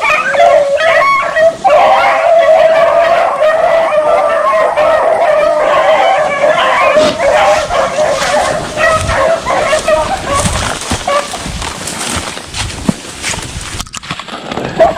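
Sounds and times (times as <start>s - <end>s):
hounds baying: 0.0s - 11.5s.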